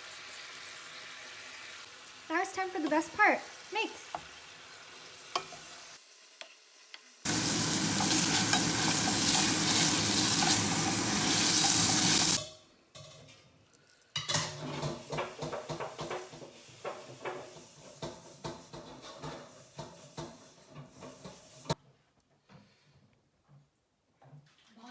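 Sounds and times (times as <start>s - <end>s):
food sizzling in hot pan: 0.0s - 12.5s, 15.0s - 18.8s
utensil scraping pan: 7.3s - 12.4s, 14.5s - 21.8s.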